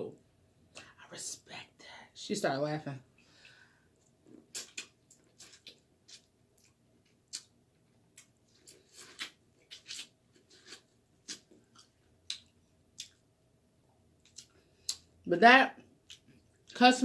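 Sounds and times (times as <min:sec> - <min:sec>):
person chewing with mouth smacks: 0:04.0 - 0:13.2, 0:14.2 - 0:15.1, 0:16.0 - 0:16.8.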